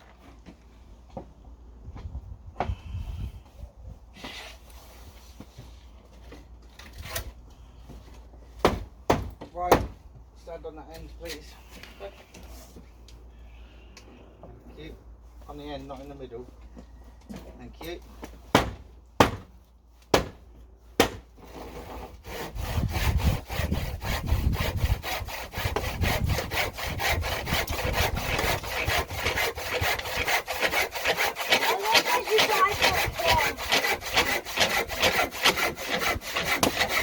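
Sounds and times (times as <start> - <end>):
handsaw cutting wood: 21.0 - 37.0.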